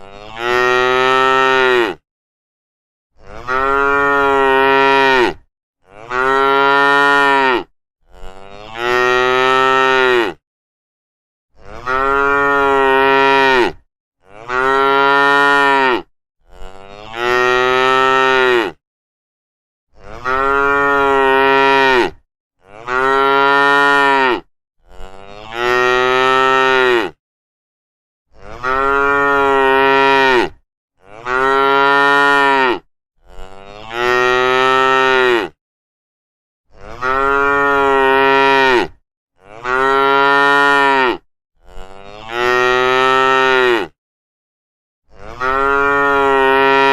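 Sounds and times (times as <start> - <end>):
cows mooing: 3.2 - 10.4, 11.6 - 18.8, 20.1 - 27.2, 28.4 - 35.6, 36.8 - 44.0, 45.2 - 46.9.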